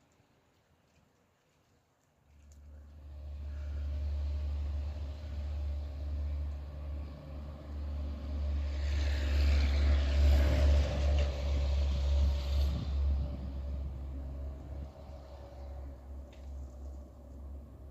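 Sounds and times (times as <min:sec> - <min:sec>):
vehicle low rumble: 0:00.0 - 0:17.9
tyre hiss on wet road: 0:03.0 - 0:17.0.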